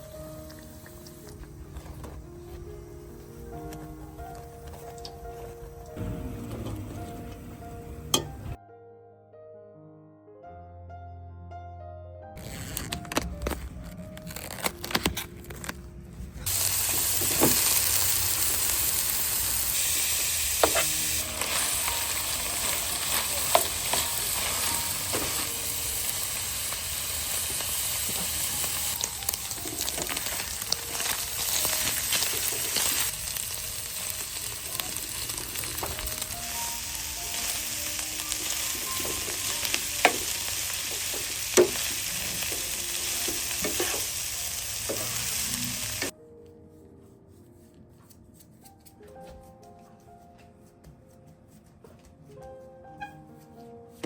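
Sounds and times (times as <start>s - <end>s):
food sizzling in frying pan: 16.4s - 46.1s.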